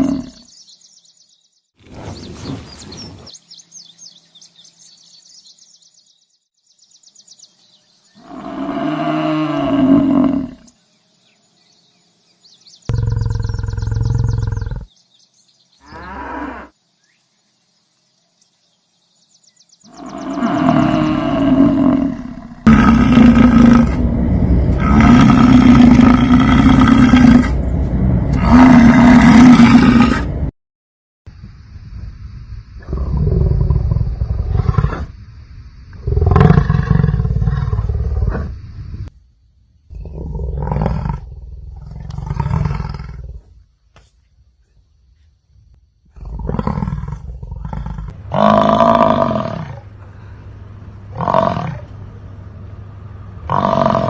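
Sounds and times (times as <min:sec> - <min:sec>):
bison bellowing: 0:20.0 - 0:30.5, 0:46.2 - 0:50.3, 0:51.0 - 0:52.0, 0:53.4 - 0:54.0.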